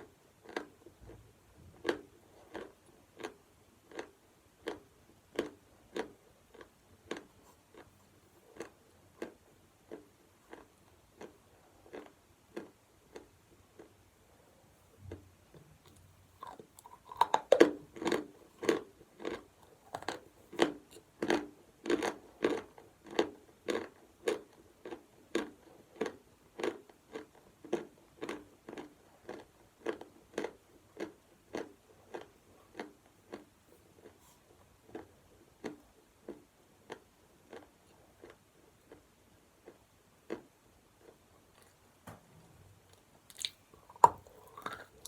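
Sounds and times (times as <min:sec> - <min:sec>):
crunching chews: 0:01.8 - 0:13.9, 0:15.8 - 0:41.8, 0:42.9 - 0:45.0.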